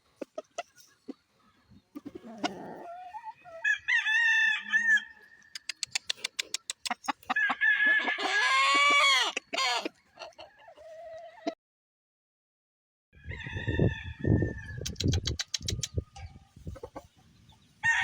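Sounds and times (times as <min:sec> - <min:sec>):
roosters crowing: 0:02.0 - 0:05.5, 0:07.2 - 0:11.4, 0:13.2 - 0:14.8, 0:17.8 - 0:18.0
sharp clicks: 0:05.5 - 0:07.0, 0:14.9 - 0:16.0.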